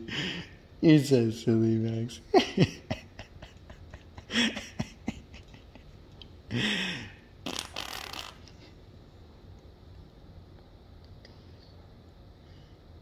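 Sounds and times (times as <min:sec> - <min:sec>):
baby blowing raspberries: 0:07.4 - 0:08.5.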